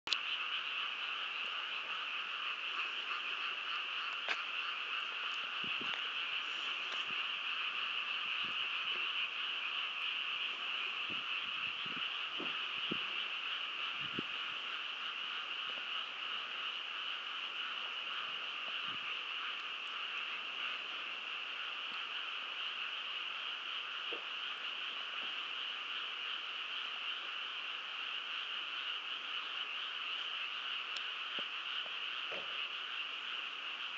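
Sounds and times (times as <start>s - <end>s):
chorus of frogs croaking: 0.1s - 33.9s.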